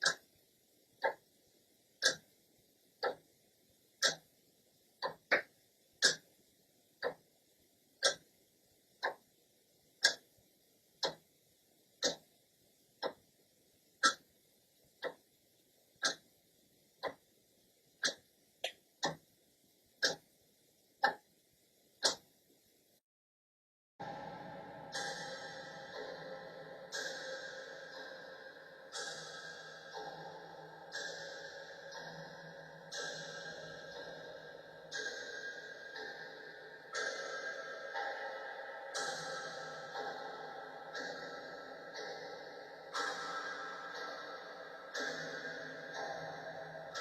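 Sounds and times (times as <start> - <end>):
clock ticking: 0.0 - 1.4, 2.0 - 3.4, 4.0 - 4.4, 5.0 - 6.4, 7.0 - 7.3, 8.0 - 8.4, 9.0 - 9.3, 9.9 - 10.4, 11.0 - 11.3, 12.0 - 12.4, 13.0 - 13.4, 14.0 - 15.3, 16.0 - 16.4, 17.0 - 17.3, 18.0 - 19.3, 20.0 - 20.4, 21.0 - 21.4, 22.0 - 22.3, 24.0 - 47.0.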